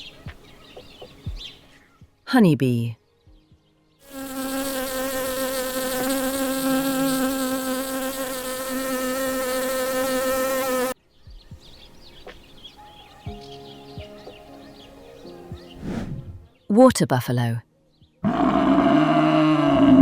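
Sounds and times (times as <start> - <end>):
honey bee buzzing: 4.0 - 11.0.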